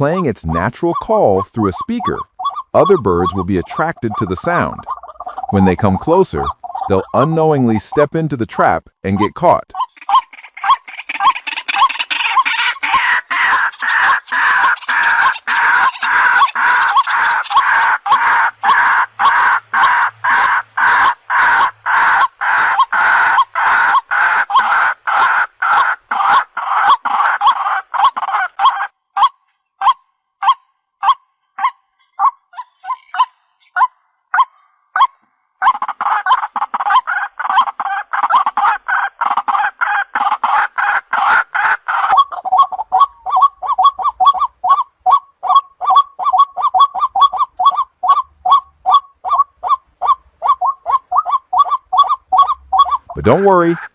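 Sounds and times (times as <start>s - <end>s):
waterhen harsh calls from speaker: 0.0s - 8.0s, 9.2s - 28.9s, 35.6s - 53.9s.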